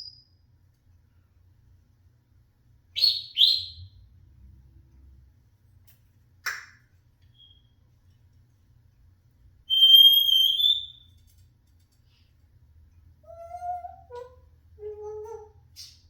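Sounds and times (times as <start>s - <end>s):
parrot high whistle: 9.7s - 11.1s
parrot squawking: 13.3s - 15.9s.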